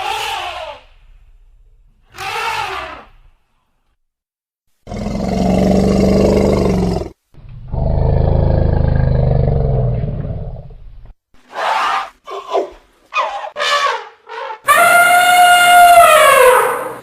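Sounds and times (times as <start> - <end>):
elephant roaring: 4.9 - 10.6.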